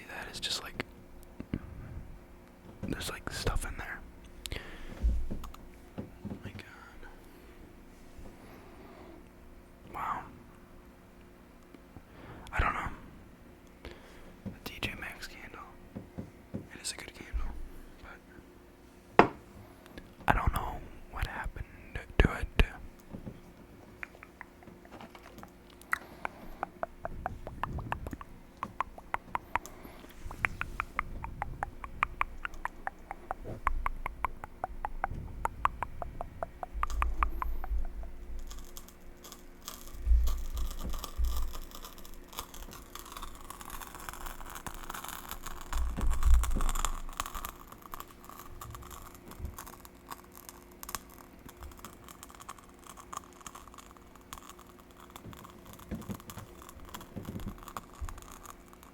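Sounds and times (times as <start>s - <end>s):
soft hissy rustle: 0.0s - 9.3s, 12.0s - 58.9s
thumps against microphone: 2.7s - 3.7s, 4.9s - 6.6s, 19.2s - 19.4s, 26.7s - 38.2s
wet mouth clicks and smacks: 24.0s - 58.6s.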